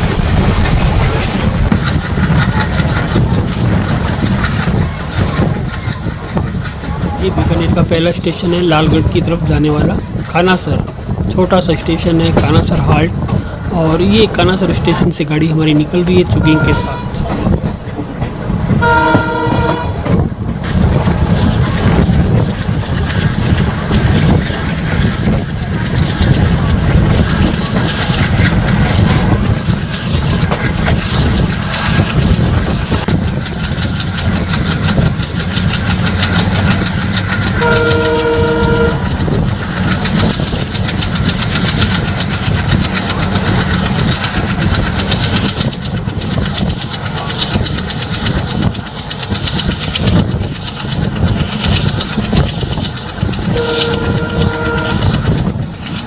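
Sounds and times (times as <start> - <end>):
diesel locomotive engine chugging: 0.0 - 56.0
locomotive horn: 16.2 - 20.2, 37.6 - 39.2, 53.5 - 55.4.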